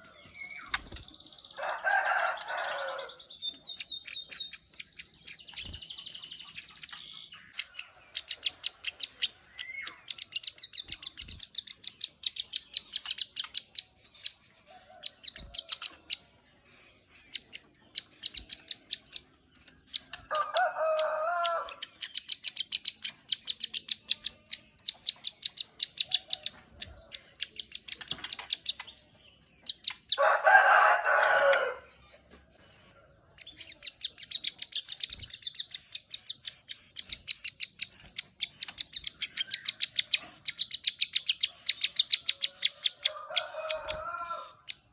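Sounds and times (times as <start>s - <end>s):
bird fast clicking trills: 33.4s - 44.1s.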